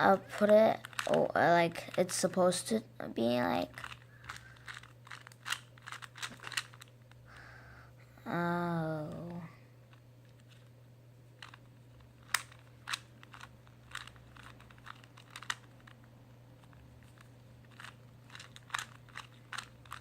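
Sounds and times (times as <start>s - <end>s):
plastic puzzle cube clicking: 0.3s - 2.4s, 3.7s - 6.9s, 11.4s - 20.0s.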